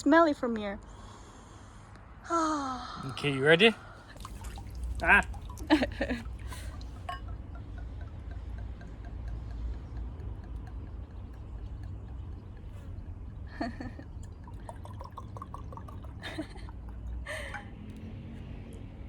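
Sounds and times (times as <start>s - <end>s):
wine pouring into glasses: 4.0s - 17.6s.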